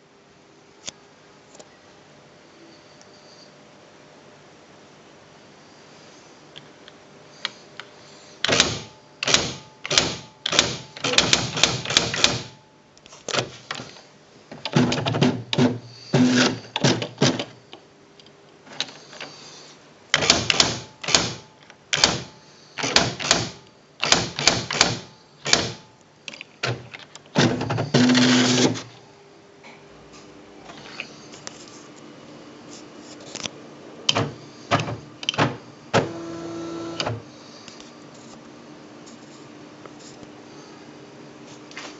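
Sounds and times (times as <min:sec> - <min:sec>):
typewriter motor whirr: 0:08.4 - 0:12.6, 0:14.6 - 0:17.6, 0:20.1 - 0:25.8, 0:26.6 - 0:28.9
electronic typewriter typing: 0:08.5 - 0:12.6, 0:14.6 - 0:17.6, 0:20.1 - 0:21.4, 0:22.0 - 0:25.8, 0:27.4 - 0:28.8.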